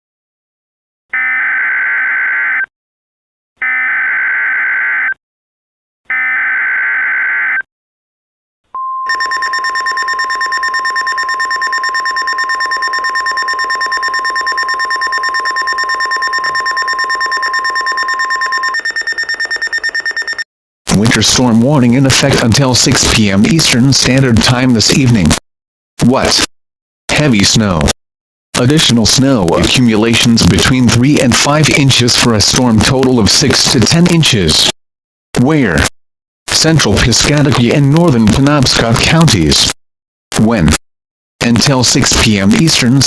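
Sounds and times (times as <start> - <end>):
steady high tone: 8.8 - 20.4
buzzing data tone bursts: 9.1 - 20.4
fast pulsing shrill alarm: 9.1 - 20.4.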